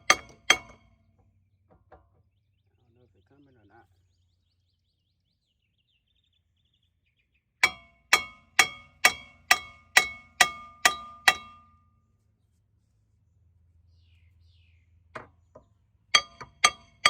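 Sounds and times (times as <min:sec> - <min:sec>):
hammer clanging on metal rotor: 0:00.0 - 0:00.9, 0:07.6 - 0:11.8, 0:16.1 - 0:17.0.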